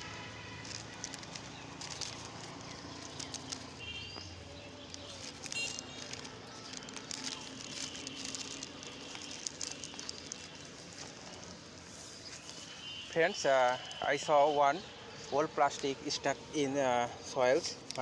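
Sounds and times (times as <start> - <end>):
plastic bag crinkling: 0.0 - 12.8.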